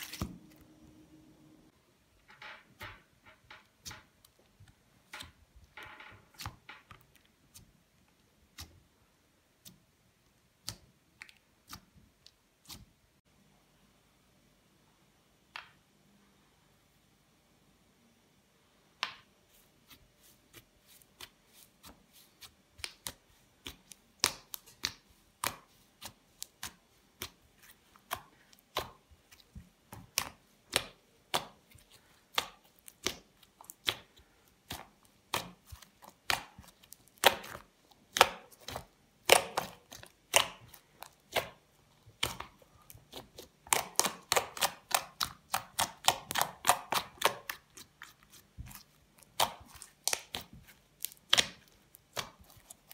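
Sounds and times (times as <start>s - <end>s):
slime clicking and crunching: 23.7s - 52.9s.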